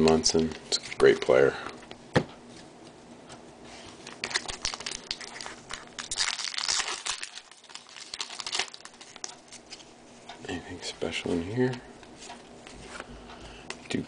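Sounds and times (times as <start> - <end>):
foil wrapper crinkling: 4.0 - 9.9.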